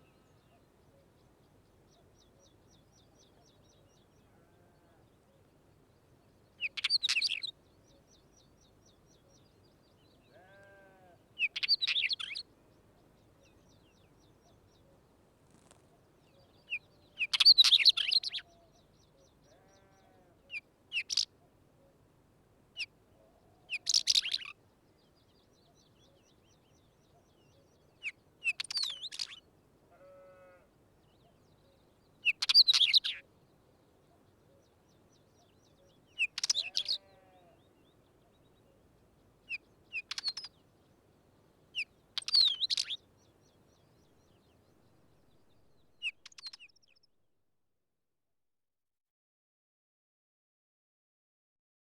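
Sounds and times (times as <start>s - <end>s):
bird singing scratchy phrases: 6.6s - 12.4s, 15.4s - 19.9s, 23.7s - 25.4s, 26.0s - 29.4s, 31.2s - 33.2s, 34.2s - 41.1s, 41.8s - 47.0s.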